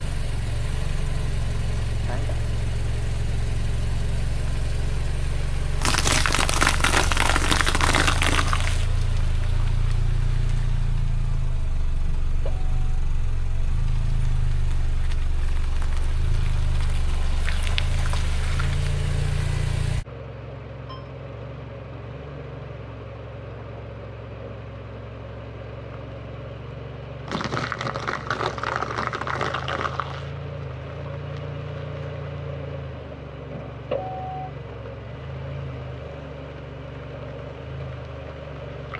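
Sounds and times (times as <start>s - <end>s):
car engine running: 0.0s - 38.9s
tyres crushing objects: 5.6s - 10.6s, 27.3s - 30.8s.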